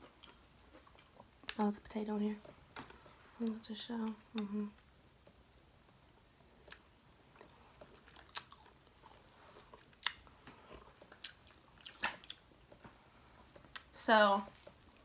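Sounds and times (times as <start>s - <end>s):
chewing: 0.0s - 1.6s, 6.6s - 13.9s.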